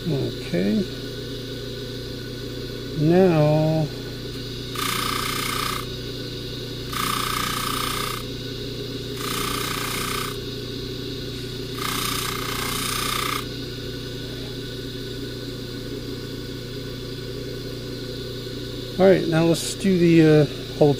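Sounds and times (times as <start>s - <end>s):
polishing buffer motor running: 0.0s - 20.9s
chain rasping on buffing wheel: 3.1s - 6.0s, 6.8s - 8.4s, 9.1s - 10.6s, 11.4s - 13.6s.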